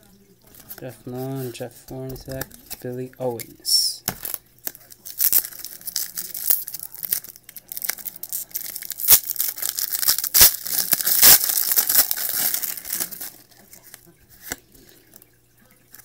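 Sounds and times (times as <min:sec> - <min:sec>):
wrapper tearing and crinkling: 0:04.1 - 0:14.6.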